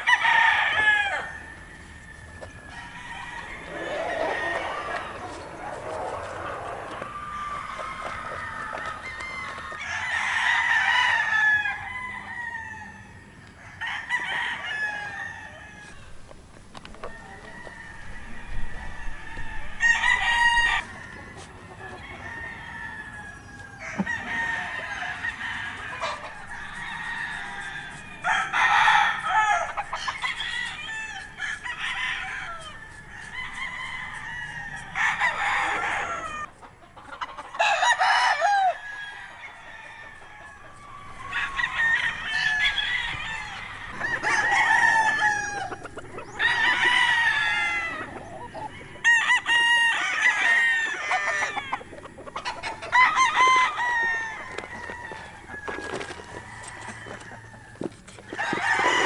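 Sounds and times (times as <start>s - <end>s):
roosters crowing: 0.0s - 59.0s
birds calling: 1.4s - 9.9s, 40.0s - 55.3s.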